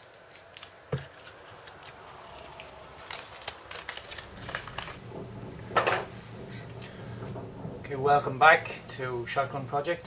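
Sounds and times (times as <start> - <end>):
packaging crinkling: 0.0 - 6.2.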